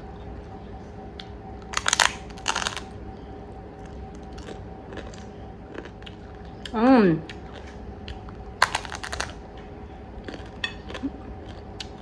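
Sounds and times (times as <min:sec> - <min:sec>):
crab shell crunching: 0:01.7 - 0:02.9, 0:08.6 - 0:09.4.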